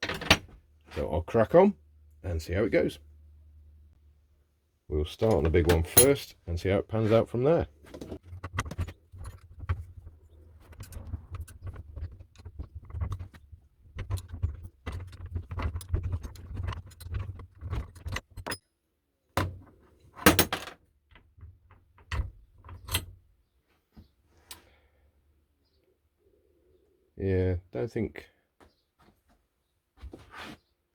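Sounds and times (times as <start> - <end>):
metal wrench clinking and scraping: 5.2 - 6.3.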